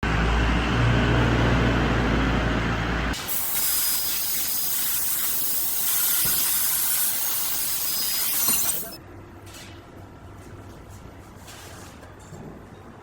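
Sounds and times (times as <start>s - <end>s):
machine hissing: 3.2s - 9.0s.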